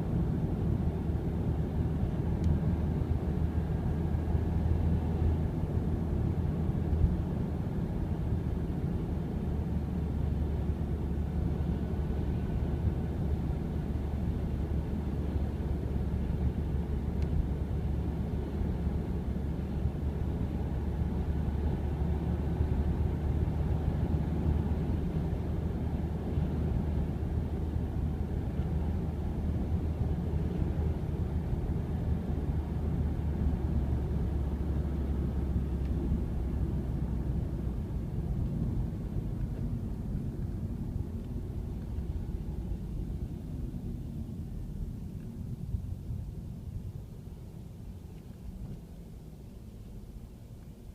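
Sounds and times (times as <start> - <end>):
continuous rattle in car cabin: 0.0 - 50.9
engine and road rumble: 0.0 - 50.9.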